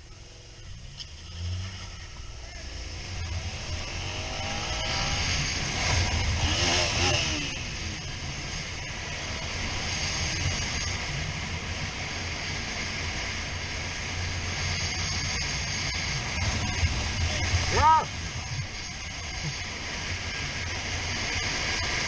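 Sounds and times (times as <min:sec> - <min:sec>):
motorcycle engine rumble: 0:00.0 - 0:22.0.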